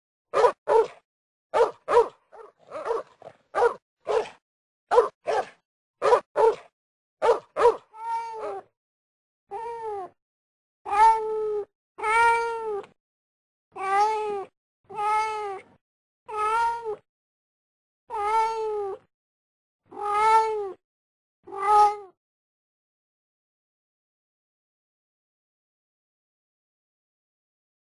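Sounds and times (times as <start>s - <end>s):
dog barks: 0.3s - 8.7s
cat meowing: 8.0s - 8.7s, 10.9s - 12.9s, 13.8s - 15.7s, 16.3s - 17.0s, 18.1s - 19.0s, 19.9s - 20.8s, 21.5s - 22.2s.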